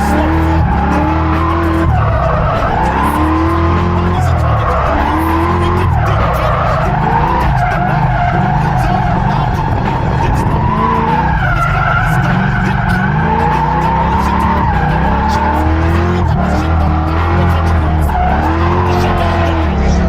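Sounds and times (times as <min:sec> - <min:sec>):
race car engine revving: 0:00.0 - 0:20.0.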